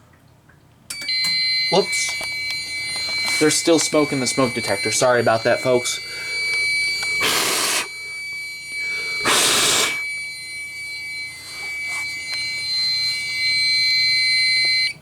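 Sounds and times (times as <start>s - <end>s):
high-pitched alarm tone: 0.9s - 15.0s
hissing rushes of air: 7.2s - 7.9s.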